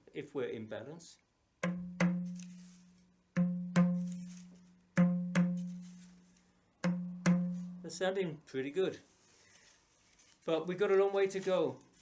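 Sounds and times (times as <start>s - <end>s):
tabla strokes ringing: 1.6s - 2.8s, 3.4s - 6.2s, 6.8s - 7.9s.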